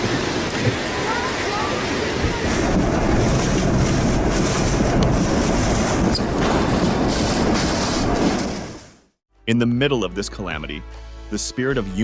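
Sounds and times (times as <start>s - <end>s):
wind buffeting microphone: 0.0s - 8.9s
sea waves: 0.0s - 9.0s.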